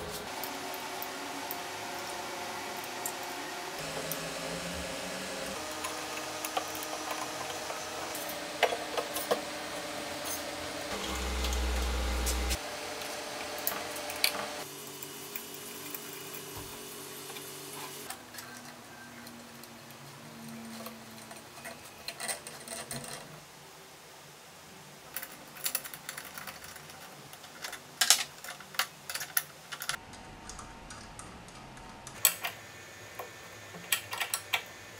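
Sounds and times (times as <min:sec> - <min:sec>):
steady hum: 0:00.0 - 0:14.7, 0:30.0 - 0:34.9
loud low hum: 0:09.5 - 0:12.6, 0:30.0 - 0:32.2.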